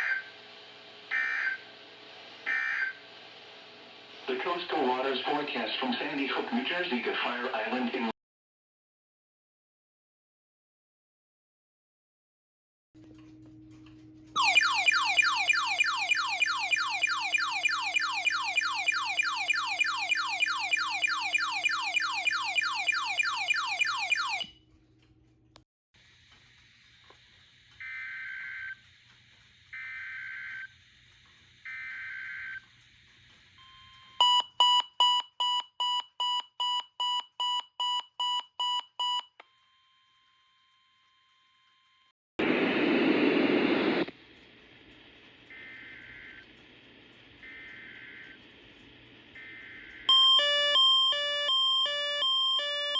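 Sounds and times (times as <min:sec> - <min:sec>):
falling siren-like chirp: 0:14.4 - 0:24.5, 0:49.4 - 0:52.9
long electronic beeps: 0:14.4 - 0:24.5, 0:49.4 - 0:52.9
quick sharp beeps: 0:14.4 - 0:24.5.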